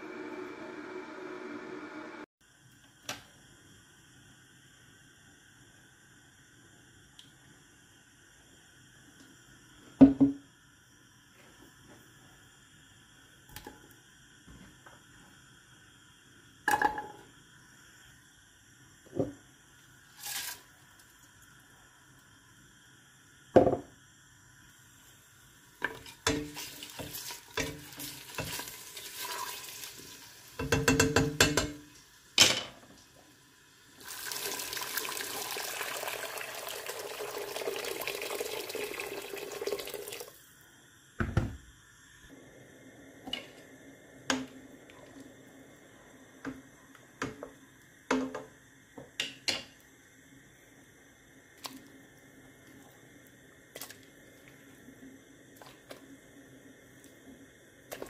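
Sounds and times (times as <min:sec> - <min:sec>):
water running: 0:25.7 - 0:40.4
pots and utensils clattering: 0:25.8 - 0:28.7, 0:30.6 - 0:31.8.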